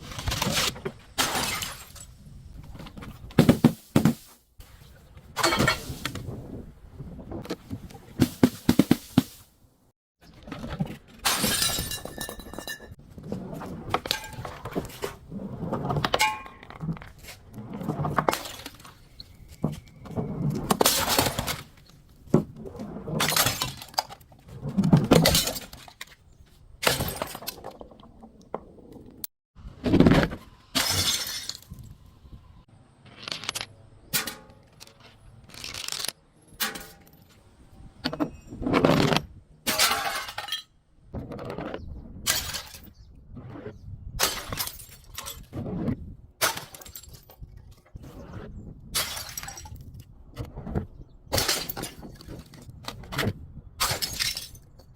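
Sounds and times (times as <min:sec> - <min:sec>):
glass crushing and breaking: 0:01.2 - 0:02.2, 0:11.2 - 0:13.0, 0:23.2 - 0:24.2, 0:25.2 - 0:26.1, 0:30.7 - 0:31.8, 0:39.0 - 0:40.8, 0:42.3 - 0:43.0, 0:44.2 - 0:45.4, 0:46.4 - 0:47.4, 0:49.0 - 0:49.8, 0:51.3 - 0:52.4, 0:53.8 - 0:54.8.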